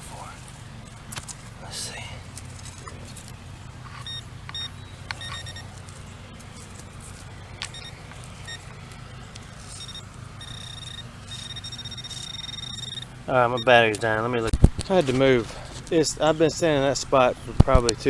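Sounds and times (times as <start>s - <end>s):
steady low hum: 0.0s - 18.0s
metal detector beeps: 4.0s - 5.9s, 7.6s - 8.8s, 9.6s - 14.9s.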